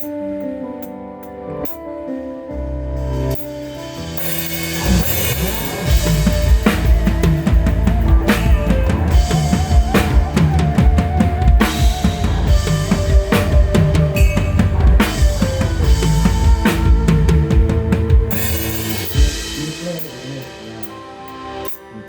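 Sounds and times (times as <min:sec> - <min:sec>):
drum kit playing loud: 0:03.1 - 0:21.9
held instrument note: 0:04.8 - 0:21.5.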